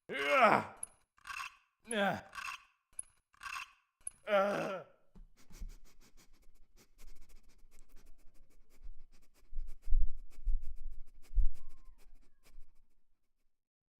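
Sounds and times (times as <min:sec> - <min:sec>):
rapid small clicks: 0:00.8 - 0:01.7, 0:02.3 - 0:04.2.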